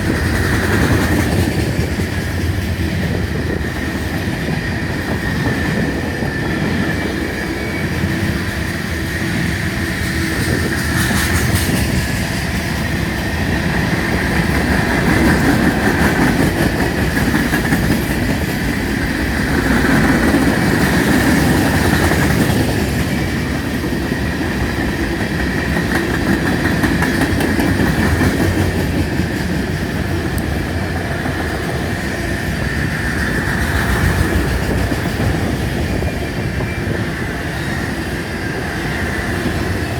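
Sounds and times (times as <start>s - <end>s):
high ring from train wheels: 0.0s - 39.9s
train wheels clattering on rails: 0.0s - 39.9s.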